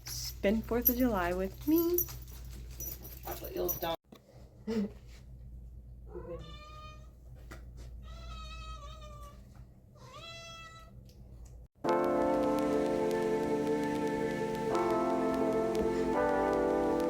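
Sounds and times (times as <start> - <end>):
cat meowing: 6.1 - 7.1, 8.0 - 9.4, 10.0 - 11.0.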